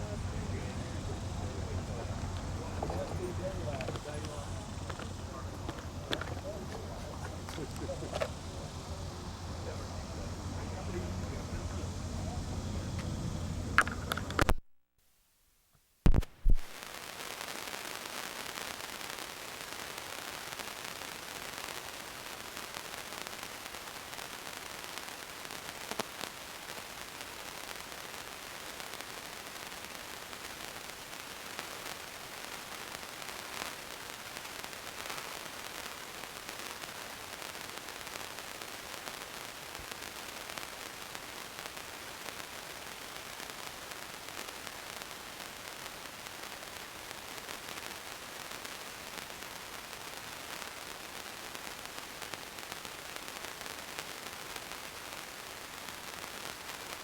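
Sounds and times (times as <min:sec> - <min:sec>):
static hiss: 0:00.0 - 0:14.6, 0:16.1 - 0:57.0.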